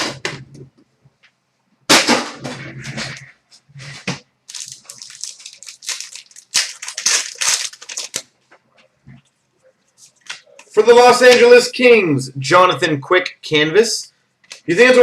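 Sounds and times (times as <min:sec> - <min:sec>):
foil pack crinkling and tearing: 0:04.5 - 0:08.4.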